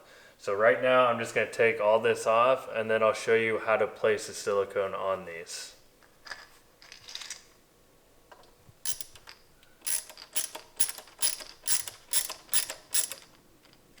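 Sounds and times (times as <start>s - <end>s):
ratchet tool clicking: 8.9s - 13.4s.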